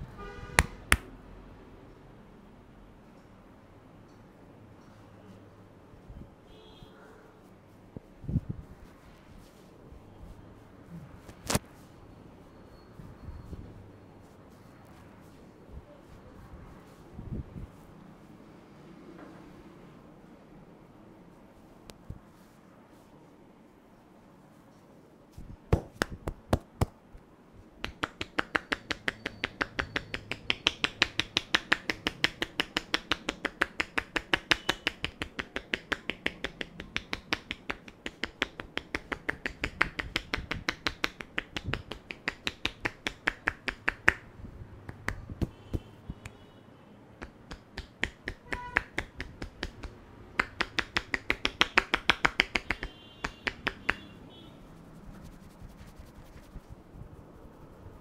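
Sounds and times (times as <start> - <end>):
hands clicking during massage: 0.6 - 1.2, 11.3 - 11.6, 25.7 - 27.0, 27.8 - 46.4, 47.2 - 56.8.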